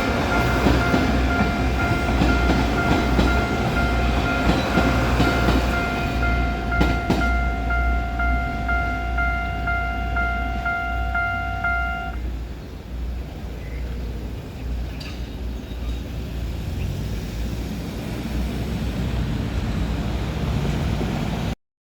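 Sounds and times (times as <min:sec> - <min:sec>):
level crossing warning tone: 0:00.0 - 0:12.3
low rumble of vehicles: 0:00.0 - 0:21.6.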